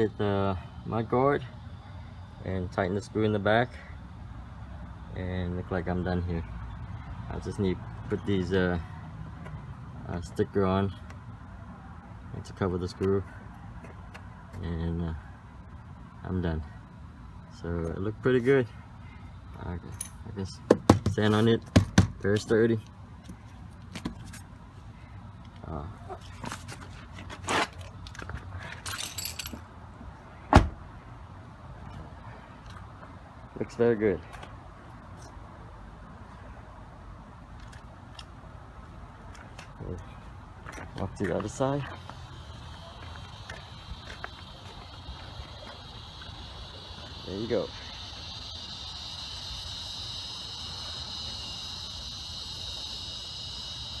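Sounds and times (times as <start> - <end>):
small metal pieces jingling: 28.7 - 29.6
insect chorus buzzing: 41.6 - 54.0.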